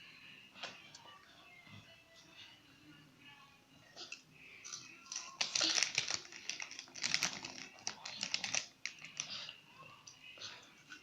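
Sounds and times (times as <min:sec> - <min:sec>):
plastic snack bag crinkling: 0:04.7 - 0:09.3.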